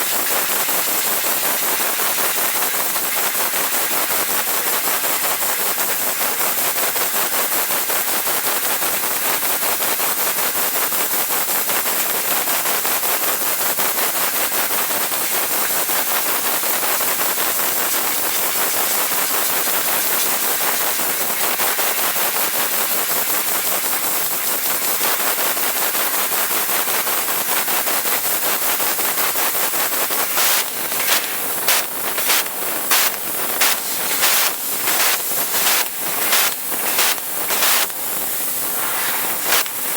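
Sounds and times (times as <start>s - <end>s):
laser cutter crackling hiss: 11.6s - 39.9s.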